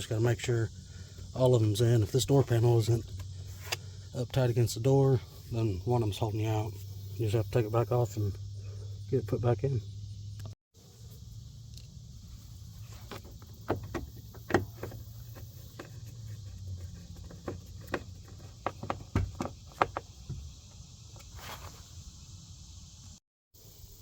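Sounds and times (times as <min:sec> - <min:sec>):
steady low hum: 0:00.0 - 0:23.2.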